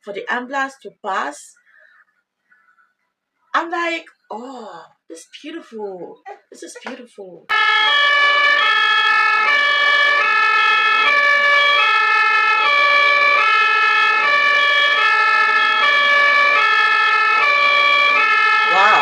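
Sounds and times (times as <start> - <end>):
two-tone ambulance siren: 7.5 - 19.0.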